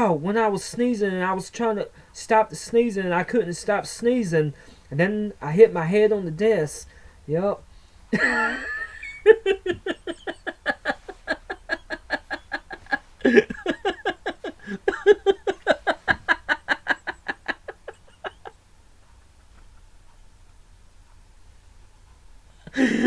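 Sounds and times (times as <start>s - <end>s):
person laughing: 8.2s - 18.6s, 22.7s - 23.0s.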